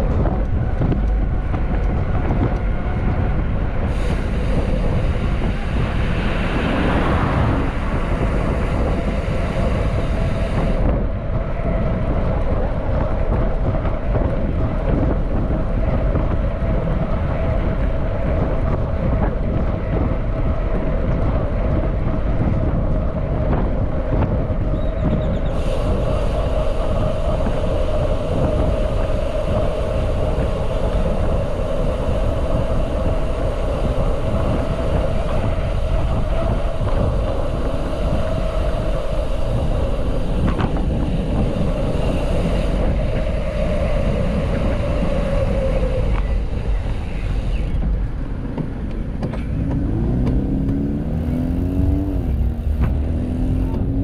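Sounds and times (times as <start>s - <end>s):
wind on microphone: 0.0s - 54.0s
steady hum: 25.5s - 54.0s.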